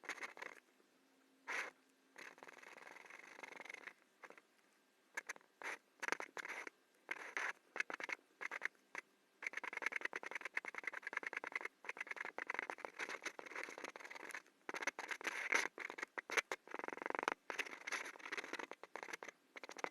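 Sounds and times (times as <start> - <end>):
pen scratching on paper: 0.0 - 0.6, 1.5 - 4.4, 5.2 - 8.7, 9.4 - 19.9.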